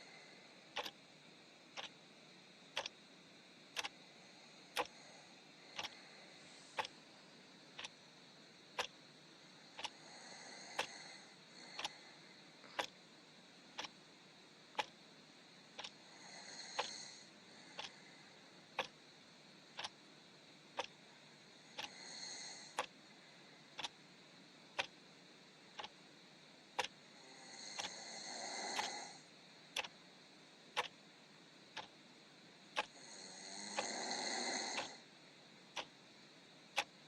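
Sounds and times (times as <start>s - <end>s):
clock ticking: 0.7s - 1.0s, 1.7s - 2.0s, 2.7s - 3.0s, 3.7s - 4.0s, 4.7s - 5.0s, 5.8s - 6.0s, 7.8s - 8.0s, 8.7s - 9.0s, 9.8s - 10.0s, 12.6s - 13.0s, 13.8s - 14.0s, 14.7s - 15.0s, 15.8s - 16.0s, 16.8s - 17.0s, 17.8s - 18.0s, 18.7s - 19.0s, 19.7s - 20.0s, 20.7s - 21.0s, 21.8s - 22.0s, 22.8s - 23.0s, 23.8s - 24.0s, 24.8s - 25.0s, 25.8s - 26.0s, 26.8s - 27.0s, 27.8s - 28.0s, 28.8s - 29.0s, 29.8s - 30.0s, 30.8s - 31.0s, 31.7s - 32.0s, 32.7s - 33.0s, 34.8s - 35.0s, 36.8s - 37.0s
quiet snores: 3.8s - 6.9s, 9.6s - 13.0s, 15.8s - 19.0s, 21.6s - 23.9s, 26.8s - 29.9s, 32.7s - 35.1s.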